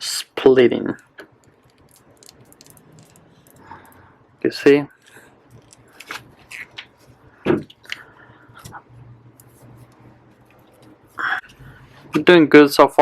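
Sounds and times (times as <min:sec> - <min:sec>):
adhesive crackling and snapping: 0:01.2 - 0:04.0, 0:05.0 - 0:07.0.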